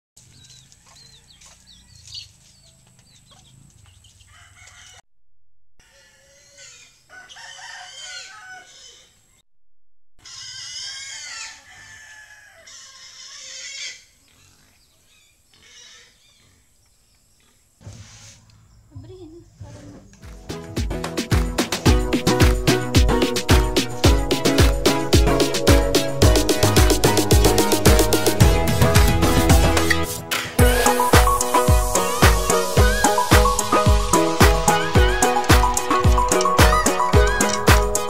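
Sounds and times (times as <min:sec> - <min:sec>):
chickens clucking: 0:00.2 - 0:05.0
roosters crowing: 0:04.2 - 0:05.0, 0:05.8 - 0:09.3, 0:10.2 - 0:14.2, 0:30.6 - 0:38.0
high chirps: 0:21.9 - 0:38.0.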